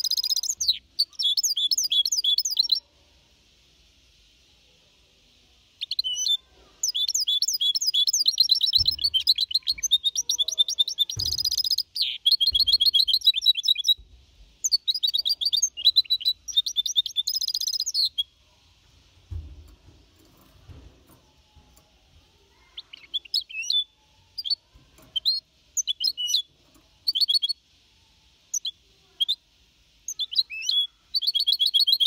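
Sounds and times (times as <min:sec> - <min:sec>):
finch singing chirps and trills: 0:00.0 - 0:02.8, 0:05.8 - 0:14.0, 0:14.6 - 0:18.3, 0:22.8 - 0:27.6, 0:30.1 - 0:32.0.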